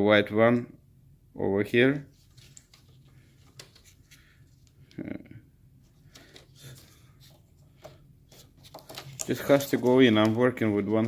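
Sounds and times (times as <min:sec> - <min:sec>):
plastic plug clicking and scraping: 0:07.8 - 0:10.5.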